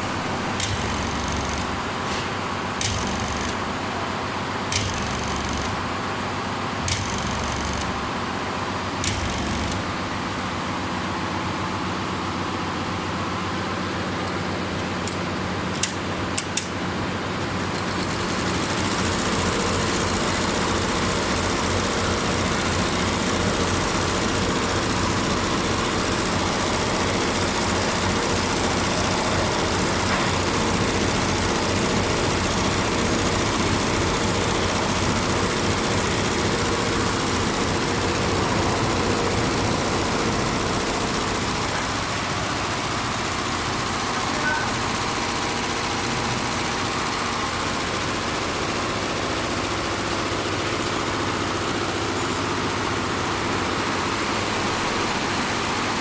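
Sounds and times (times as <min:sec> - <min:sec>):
boring machine droning: 0:00.0 - 0:12.6, 0:17.1 - 0:56.0
sharp clicks: 0:00.6 - 0:01.7, 0:02.8 - 0:03.6, 0:04.7 - 0:05.8, 0:06.8 - 0:08.0, 0:09.0 - 0:09.8.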